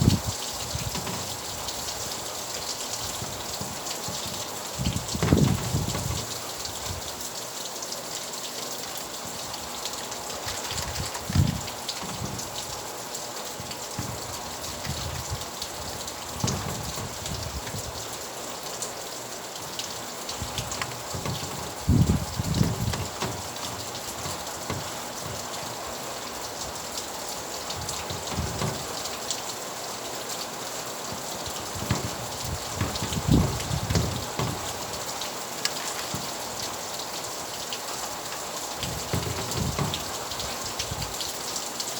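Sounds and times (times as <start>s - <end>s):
rain pattering: 0.0s - 41.9s
low thuds: 3.0s - 7.1s, 10.2s - 18.2s, 19.6s - 29.3s, 31.1s - 35.3s, 38.8s - 41.2s.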